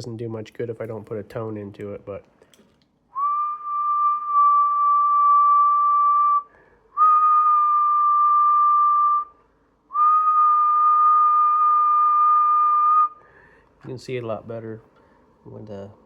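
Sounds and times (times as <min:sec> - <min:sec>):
high whistled test tone: 0:03.1 - 0:13.2.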